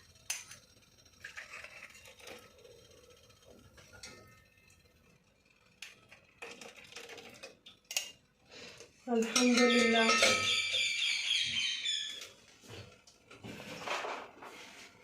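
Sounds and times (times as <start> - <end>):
small cups clicking: 0.0 - 11.1.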